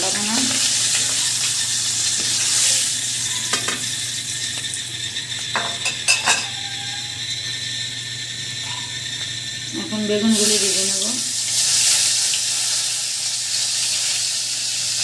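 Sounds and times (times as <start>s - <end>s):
oil sizzling in a pan: 0.0s - 15.0s
metal utensil clinking on pan: 5.6s - 6.6s.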